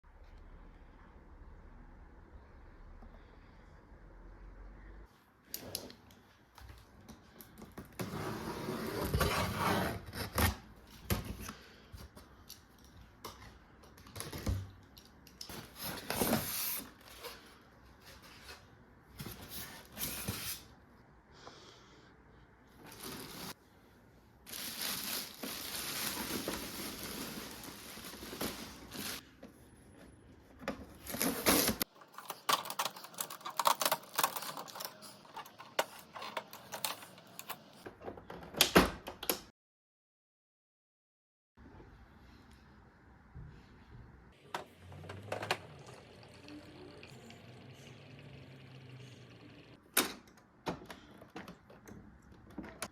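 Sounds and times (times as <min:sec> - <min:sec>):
packaging rustling and tearing: 0:22.8 - 0:23.6, 0:24.5 - 0:29.2, 0:31.0 - 0:35.6.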